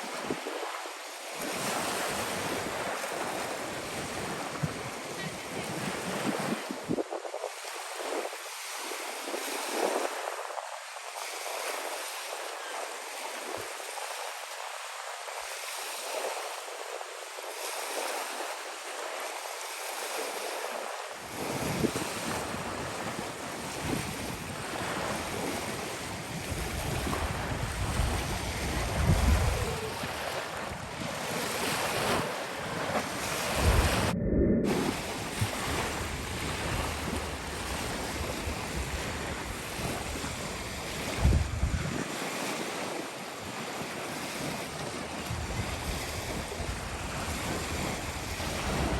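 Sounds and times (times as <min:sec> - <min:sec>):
sea waves: 0:00.0 - 0:48.9
wind: 0:00.0 - 0:48.9
wind buffeting microphone: 0:01.4 - 0:08.6, 0:21.2 - 0:48.9.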